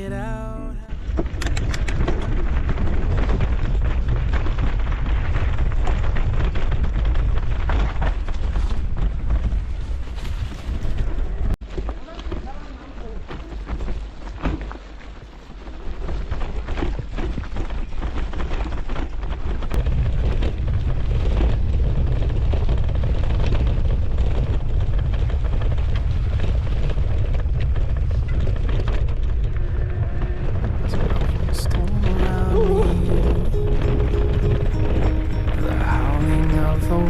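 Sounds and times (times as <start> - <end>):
wind buffeting microphone: 19.6 - 37.0.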